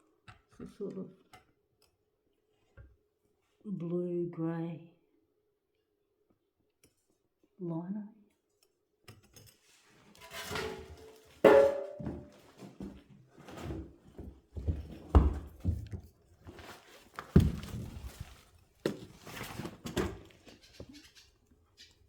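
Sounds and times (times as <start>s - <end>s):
scraping and rustling: 9.6s - 15.1s, 15.8s - 22.0s.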